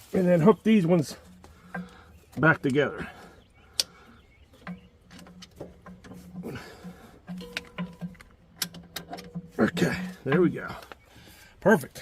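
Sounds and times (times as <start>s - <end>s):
small knocks: 4.5s - 11.0s
hose couplers snapping together: 7.3s - 10.2s
sharp metal clicks: 7.3s - 11.0s.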